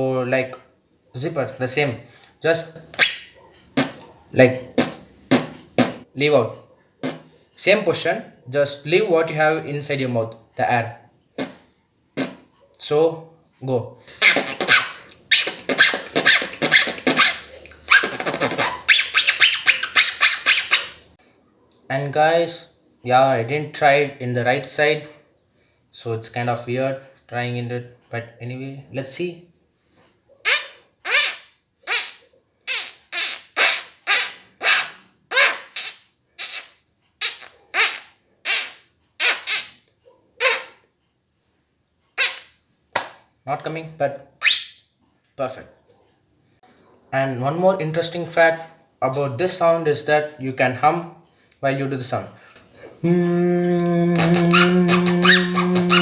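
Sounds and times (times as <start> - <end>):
beatboxed squeaky zipper: 2.9 - 4.1, 4.7 - 6.0, 7.0 - 7.3, 11.4 - 12.5, 14.1 - 21.0, 30.4 - 39.8, 40.4 - 40.8, 42.2 - 42.5, 44.4 - 44.8, 53.8 - 56.0.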